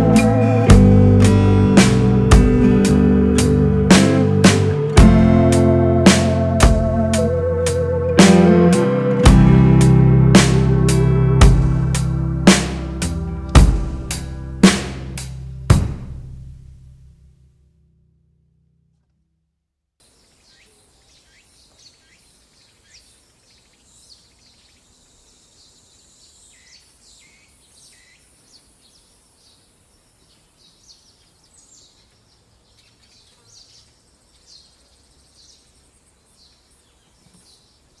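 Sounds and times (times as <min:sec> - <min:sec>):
small birds chirping: 0:00.0 - 0:15.3, 0:20.1 - 0:38.0
high steady buzz: 0:00.0 - 0:15.9.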